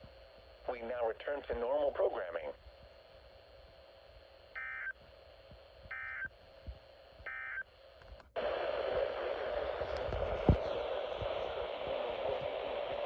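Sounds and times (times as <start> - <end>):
radio hiss: 0.0 - 5.0, 8.4 - 13.0.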